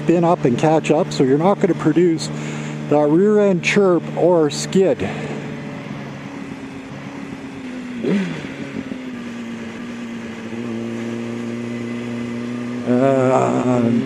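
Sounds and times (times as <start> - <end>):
motorcycle engine running: 0.0 - 14.0.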